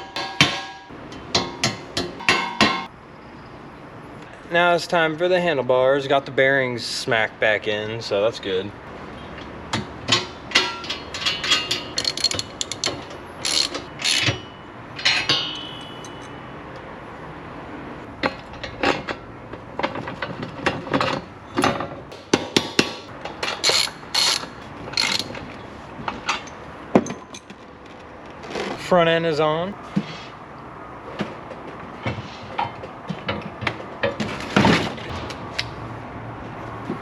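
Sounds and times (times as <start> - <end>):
metal parts clinking: 10.5 - 16.4, 23.2 - 25.4
ratchet wrench clicking: 11.2 - 14.3, 23.4 - 25.4.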